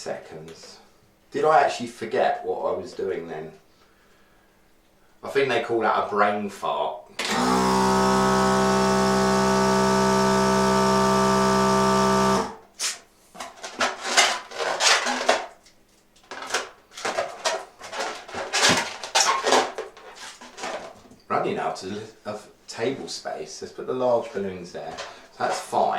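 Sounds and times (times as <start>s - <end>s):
balloon pump motor hum: 7.2s - 12.6s.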